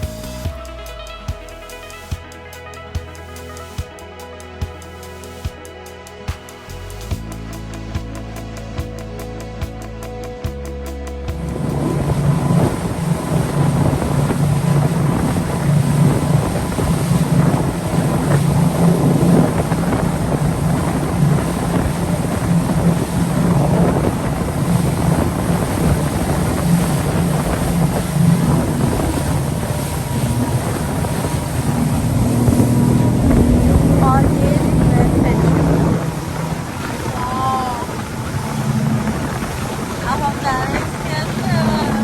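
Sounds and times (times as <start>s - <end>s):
boat engines running: 0.0s - 42.0s
wind buffeting microphone: 10.5s - 42.0s.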